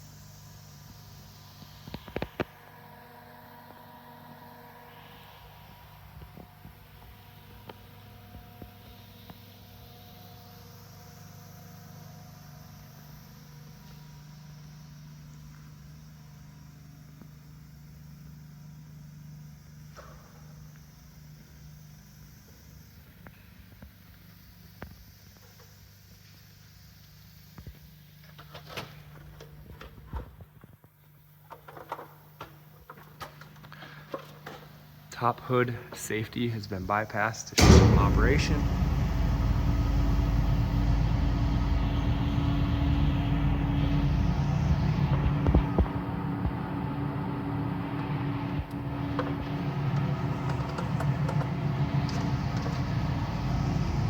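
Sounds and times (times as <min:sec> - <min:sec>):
mixer grinder humming: 0:37.6 - 0:54.0.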